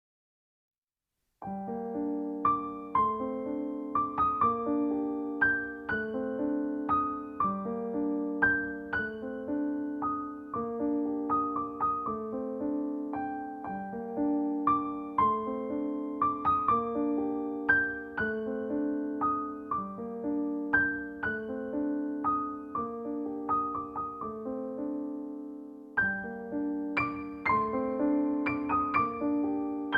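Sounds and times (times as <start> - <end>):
slow piano music: 1.4 - 29.9.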